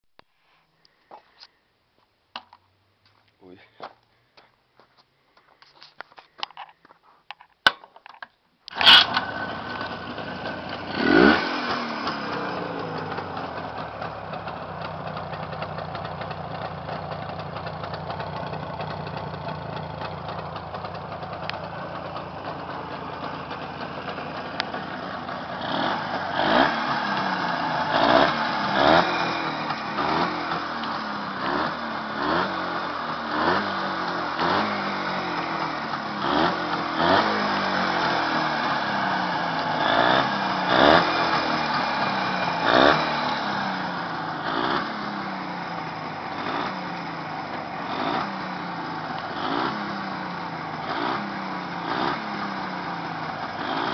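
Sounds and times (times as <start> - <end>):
engine starting and revving: 8.7 - 14.0, 23.5 - 45.4, 46.2 - 46.9, 47.8 - 52.8, 53.4 - 53.9.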